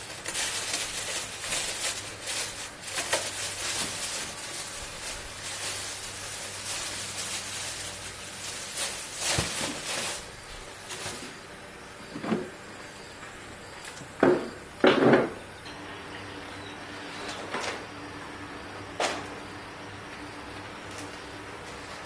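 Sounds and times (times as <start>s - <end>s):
objects knocking and clunking: 12.1s - 12.6s, 14.2s - 15.4s.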